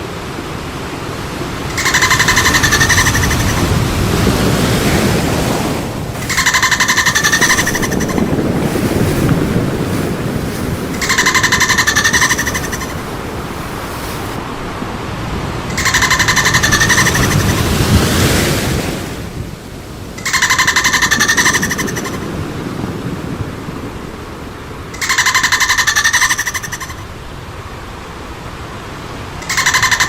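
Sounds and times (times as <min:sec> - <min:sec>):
water noise: 0:00.0 - 0:30.0
dolphin buzzing calls: 0:01.6 - 0:14.4, 0:15.7 - 0:17.8, 0:20.2 - 0:22.2, 0:29.4 - 0:30.0.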